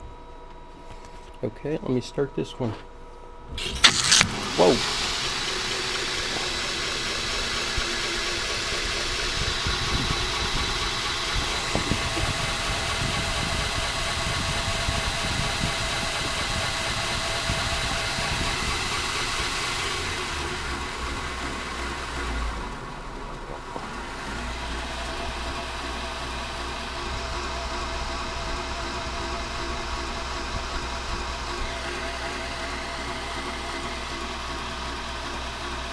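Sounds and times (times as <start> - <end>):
belt grinder running: 3.6 - 22.8, 23.7 - 35.9.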